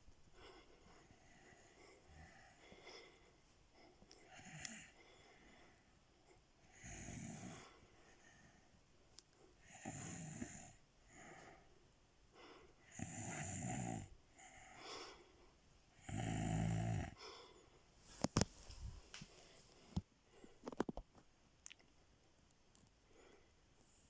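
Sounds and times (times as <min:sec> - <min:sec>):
soft breaths: 0:00.0 - 0:21.0, 0:22.8 - 0:24.0
loud snoring: 0:09.7 - 0:10.8, 0:12.9 - 0:14.1, 0:16.0 - 0:17.2.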